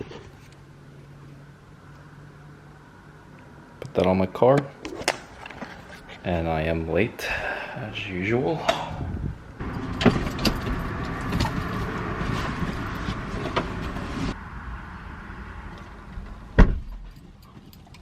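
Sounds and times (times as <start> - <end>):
car door shutting: 16.6 - 17.0.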